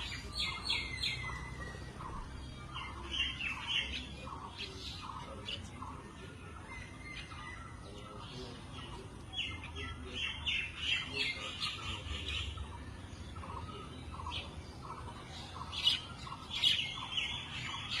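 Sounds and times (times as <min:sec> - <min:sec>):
birds chattering squawks: 0:00.0 - 0:18.0.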